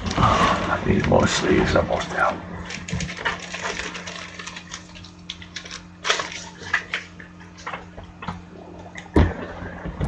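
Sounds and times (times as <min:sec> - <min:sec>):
faint steady hum: 0:00.0 - 0:10.0
card sleeves crinkling: 0:02.0 - 0:07.2.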